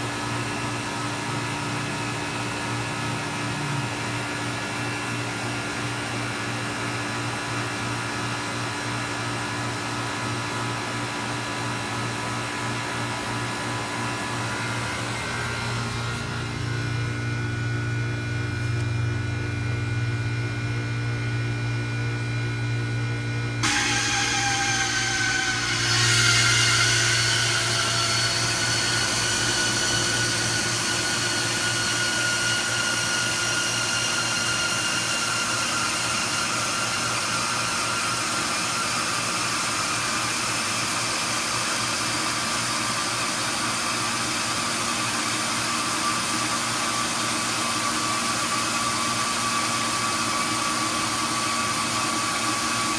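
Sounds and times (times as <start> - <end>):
hvac unit rushing air: 12.4 - 38.3
steady hum: 12.8 - 37.3
whining tones sliding down: 23.6 - 37.8.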